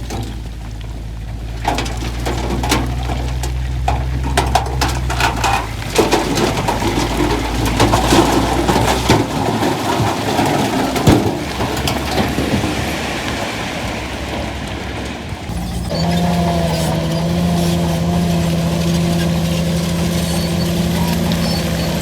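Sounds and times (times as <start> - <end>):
machine clanks and knocks: 0.0 - 13.2
low diesel engine hum: 0.0 - 22.0.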